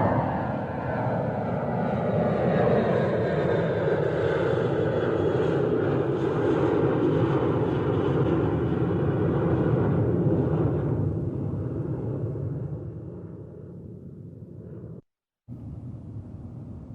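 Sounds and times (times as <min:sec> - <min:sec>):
airplane passing overhead: 0:00.0 - 0:16.9.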